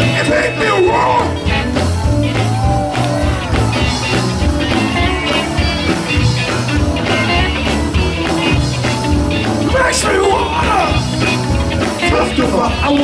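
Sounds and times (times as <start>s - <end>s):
guitar or vocal runs: 0.0s - 13.0s
heavy bass line: 0.0s - 13.0s.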